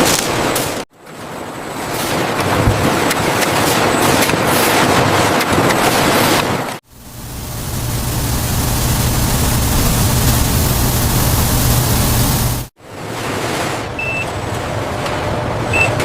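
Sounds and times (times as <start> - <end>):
steady rushing noise: 6.8 - 13.9
low hum: 6.9 - 12.7.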